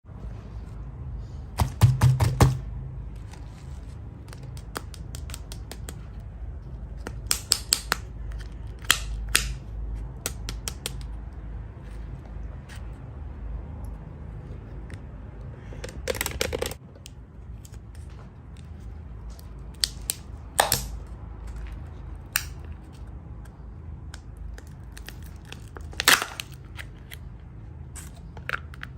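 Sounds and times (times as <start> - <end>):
small objects clicking: 7.0 - 9.6.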